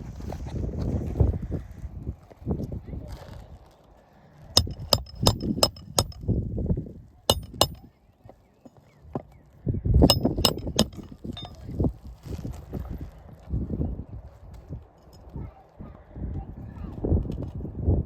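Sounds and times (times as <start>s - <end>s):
hammer striking roofing nails: 4.6s - 6.2s, 7.3s - 7.8s, 10.1s - 11.6s.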